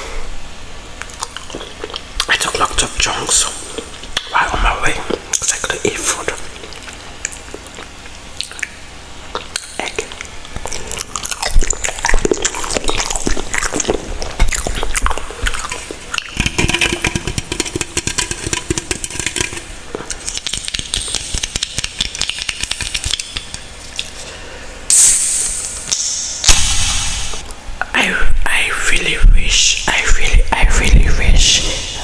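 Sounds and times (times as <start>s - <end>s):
wet squishy food clicks: 6.4s - 24.2s.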